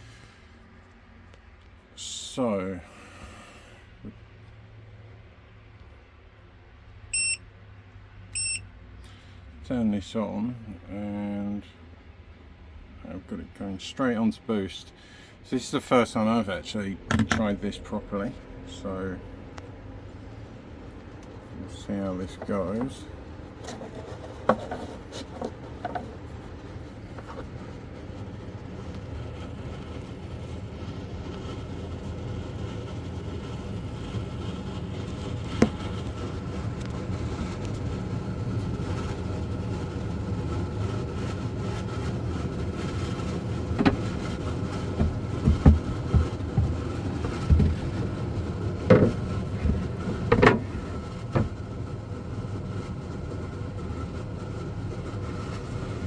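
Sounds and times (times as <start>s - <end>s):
air conditioner humming: 0.0s - 56.0s
sharp knocks and clicks: 43.8s - 44.4s, 45.0s - 48.1s, 48.8s - 51.6s.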